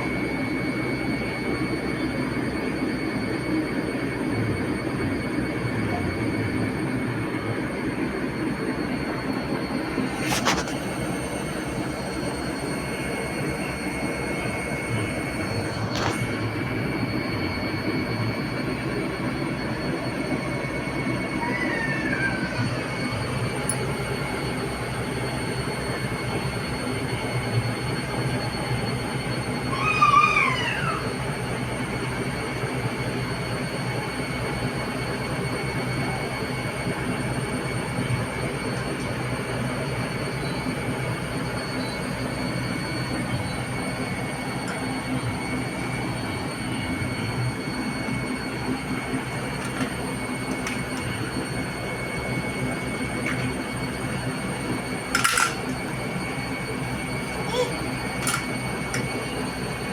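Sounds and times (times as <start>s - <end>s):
high whine: 0.0s - 59.9s
washing machine running: 0.0s - 59.9s
warbling squeal: 21.0s - 24.0s, 29.7s - 31.2s, 42.6s - 59.8s.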